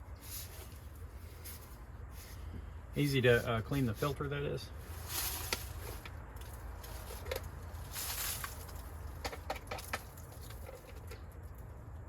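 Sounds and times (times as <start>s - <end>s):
plastic rustle: 4.8s - 11.2s.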